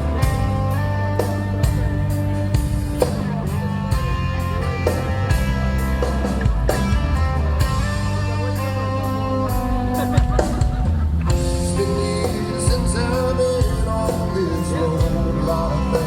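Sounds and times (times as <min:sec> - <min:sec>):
live rock band playing: 0:00.0 - 0:16.0.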